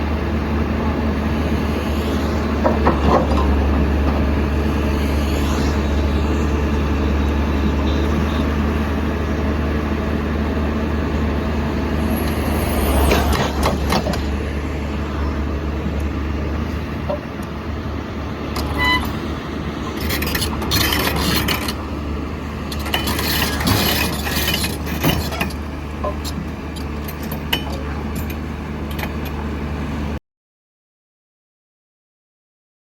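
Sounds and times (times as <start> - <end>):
excavator diesel engine running: 0.0 - 30.2
metallic clanks and knocks: 22.7 - 29.4.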